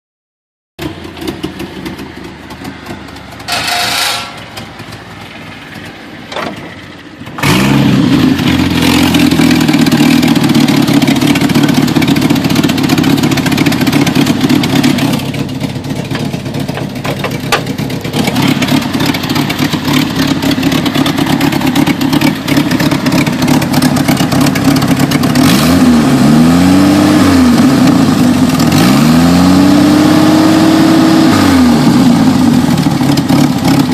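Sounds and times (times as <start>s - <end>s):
car engine idling: 0.8s - 25.5s, 31.9s - 33.9s
car engine revving: 0.8s - 33.9s
car engine starting: 0.8s - 33.9s.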